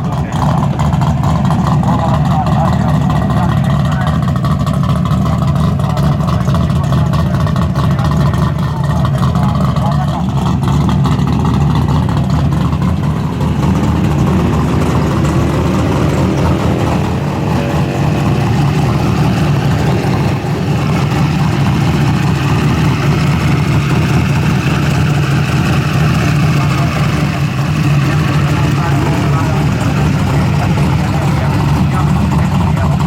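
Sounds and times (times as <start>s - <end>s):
car engine rumbling: 0.0s - 33.0s.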